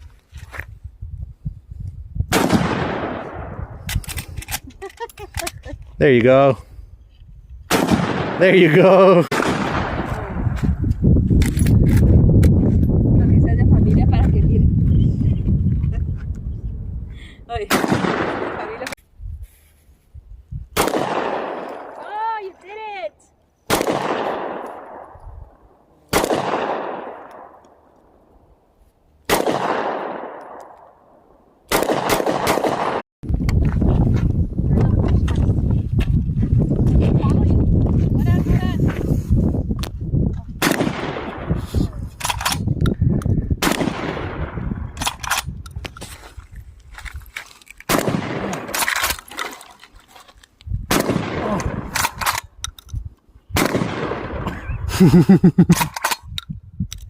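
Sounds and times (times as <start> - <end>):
echoing gunshots: 2.3 - 3.8, 7.7 - 10.5, 17.7 - 18.9, 20.8 - 22.0, 23.7 - 25.2, 26.1 - 27.7, 29.3 - 31.1, 31.7 - 33.0, 40.6 - 41.7, 43.6 - 45.0, 47.9 - 49.0, 50.9 - 52.3, 53.6 - 54.6.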